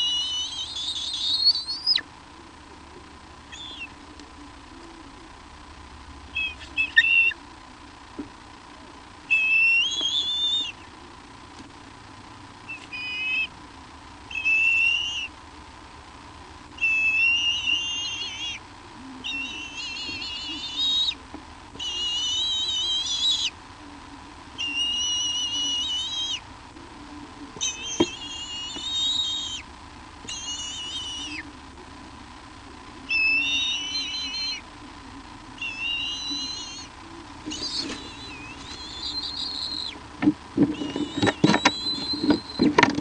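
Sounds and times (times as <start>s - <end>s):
bird whistled calls: 0.0s - 2.1s, 3.5s - 3.9s, 6.3s - 7.4s, 9.3s - 10.9s, 12.7s - 13.5s, 14.3s - 15.3s, 16.8s - 18.6s, 19.2s - 21.2s, 21.8s - 23.6s, 24.6s - 26.4s, 27.6s - 29.7s, 30.3s - 31.4s, 33.1s - 34.6s, 35.6s - 36.9s, 37.5s - 40.0s, 40.7s - 42.7s
faint steady tone: 0.0s - 42.9s.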